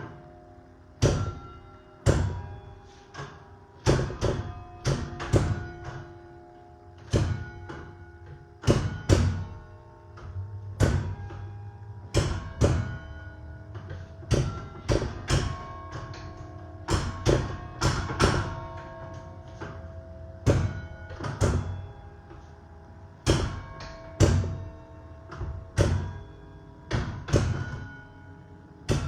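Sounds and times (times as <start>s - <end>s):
church bells playing a carol: 11.0s - 29.0s.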